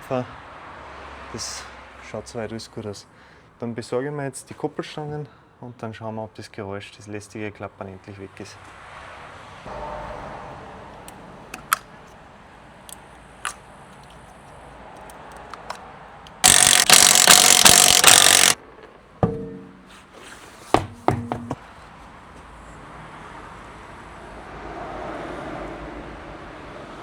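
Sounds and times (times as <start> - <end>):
power tool rattling: 15.6 - 18.6
metal clinks and knocks: 19.2 - 20.0.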